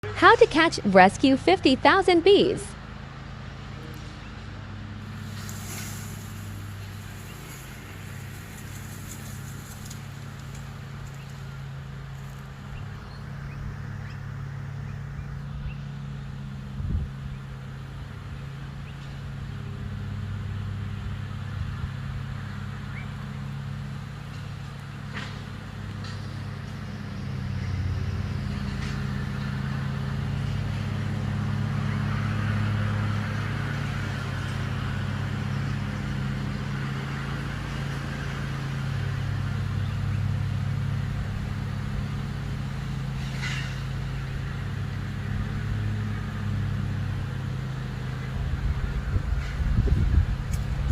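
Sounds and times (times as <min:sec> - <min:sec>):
bee swarm buzzing: 0:05.1 - 0:11.3.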